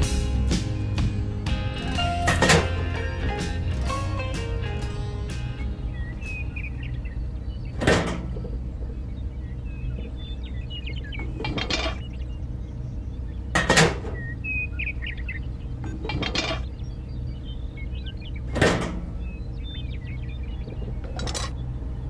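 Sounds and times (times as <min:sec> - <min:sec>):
birds chirping faintly: 0:00.0 - 0:22.0
low engine hum: 0:00.0 - 0:22.0
clattering scraping bursts: 0:01.8 - 0:06.9, 0:07.6 - 0:08.8.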